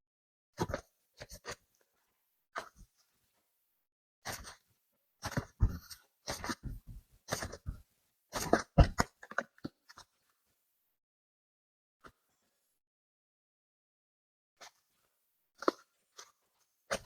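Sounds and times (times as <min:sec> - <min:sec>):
clay squishing: 0:04.3 - 0:10.6, 0:14.6 - 0:17.0.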